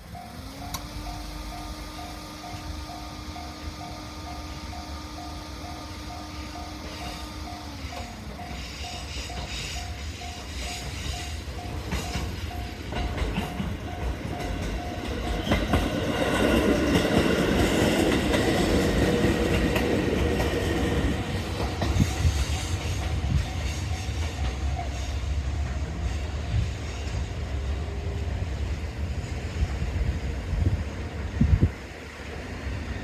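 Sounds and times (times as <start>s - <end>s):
level-crossing alarm ringing: 0.0s - 26.4s
train wheels clattering on rails: 6.1s - 30.1s.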